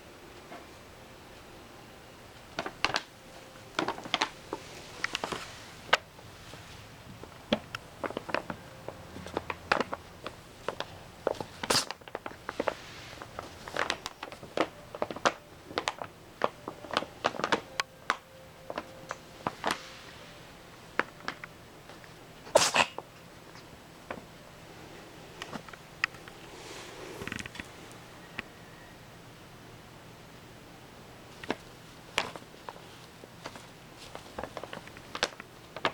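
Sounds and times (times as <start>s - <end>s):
paper bag crinkling: 2.5s - 22.2s, 31.4s - 35.9s.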